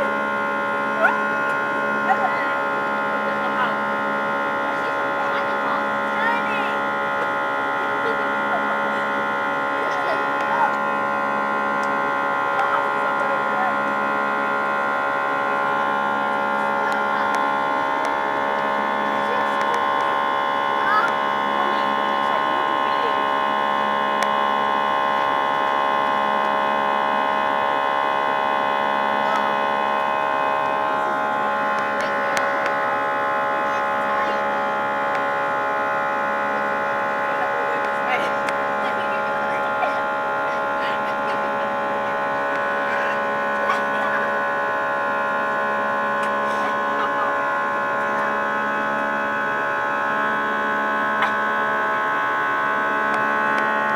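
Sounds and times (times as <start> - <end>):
jet engines droning: 0.0 - 53.9
whining tones: 0.0 - 53.9.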